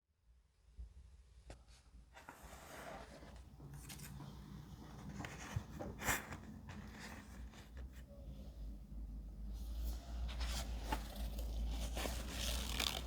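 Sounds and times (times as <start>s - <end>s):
paper rustling and crinkling: 9.8s - 13.0s.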